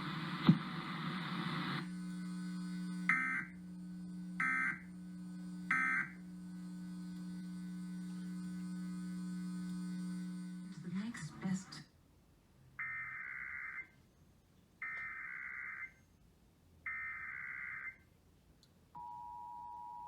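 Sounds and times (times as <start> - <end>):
electrical hum: 0.0 - 11.9
data tone bursts: 1.8 - 3.6, 4.3 - 4.9, 5.5 - 11.7.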